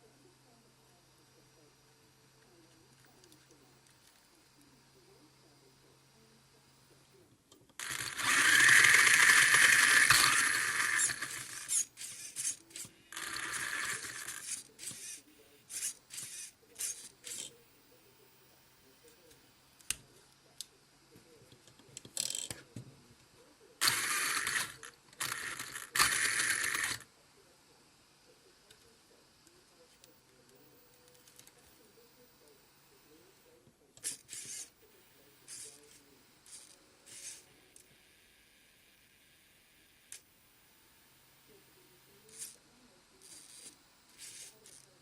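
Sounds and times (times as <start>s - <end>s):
small electric motor whirring: 7.8s - 20.0s, 23.8s - 27.1s, 30.0s - 45.0s.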